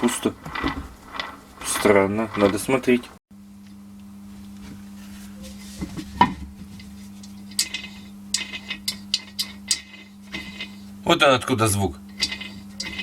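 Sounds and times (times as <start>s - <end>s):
steady low hum: 0.0s - 13.0s
metal gearbox parts clinking: 12.1s - 13.0s.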